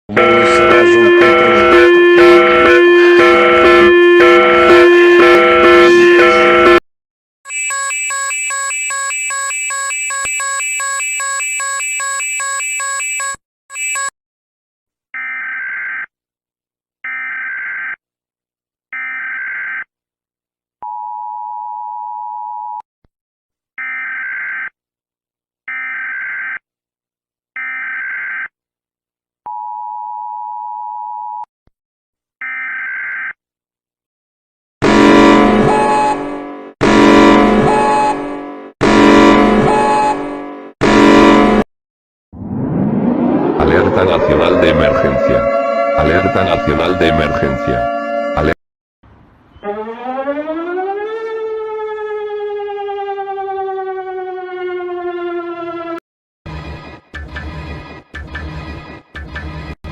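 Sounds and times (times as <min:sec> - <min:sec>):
buzzing multi-tone signal: 0:00.1 - 0:06.8, 0:07.5 - 0:14.1
two-tone attention signal: 0:00.1 - 0:06.8, 0:07.5 - 0:14.1
short data bursts: 0:07.5 - 0:14.1.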